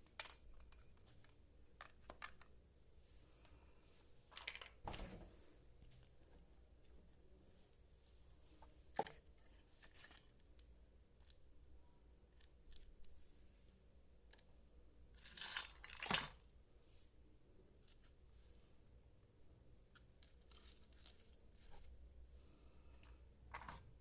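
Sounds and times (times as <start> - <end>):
light clicks of toy pieces: 9.4 - 11.4, 12.3 - 14.5.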